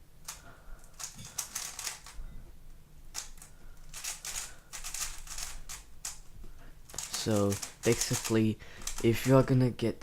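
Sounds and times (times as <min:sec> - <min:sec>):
puzzle cube clicking: 0:00.3 - 0:02.2, 0:03.1 - 0:06.2, 0:06.9 - 0:09.4.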